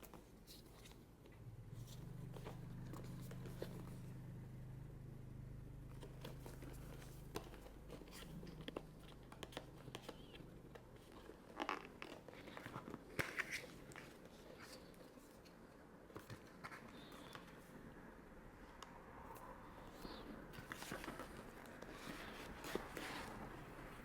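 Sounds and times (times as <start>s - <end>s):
low steady hum: 0.1s - 24.0s
packaging clicks taps and rustles: 5.9s - 15.0s.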